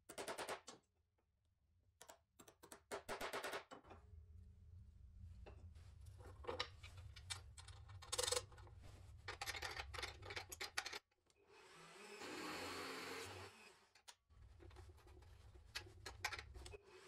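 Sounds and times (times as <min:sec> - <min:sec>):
low hum: 0:04.0 - 0:08.0.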